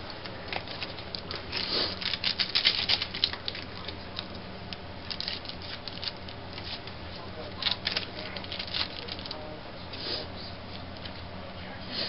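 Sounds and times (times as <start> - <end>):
cards rustling and flicking: 0.0 - 9.4.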